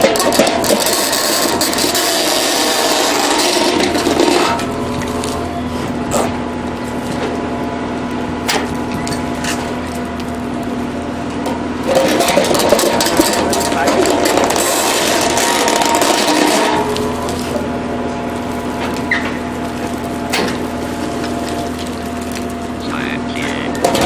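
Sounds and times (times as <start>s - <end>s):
concrete cracking: 0.0s - 5.4s, 11.8s - 17.7s, 18.3s - 24.0s
pile breaker crushing concrete: 0.0s - 7.4s, 8.4s - 24.0s
hydraulic hum: 0.0s - 24.0s.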